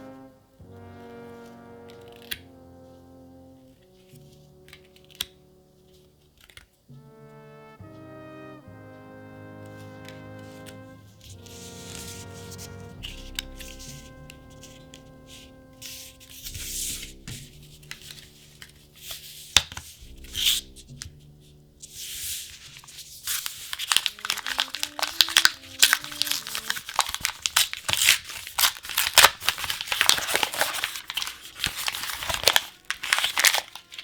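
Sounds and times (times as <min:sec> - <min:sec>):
faint background music: 0:00.0 - 0:34.0
plastic packaging tearing and crinkling: 0:22.6 - 0:34.0.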